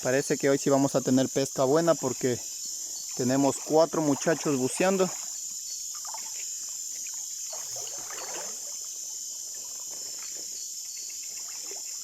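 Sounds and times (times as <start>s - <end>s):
crickets trilling: 0.0s - 12.0s
water splashing: 3.1s - 12.0s.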